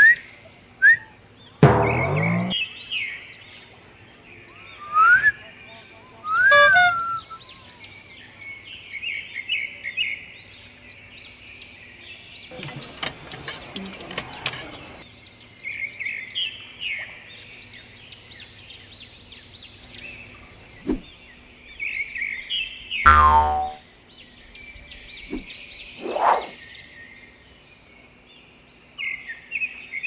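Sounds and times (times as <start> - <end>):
rustling noise: 12.5 - 15.0.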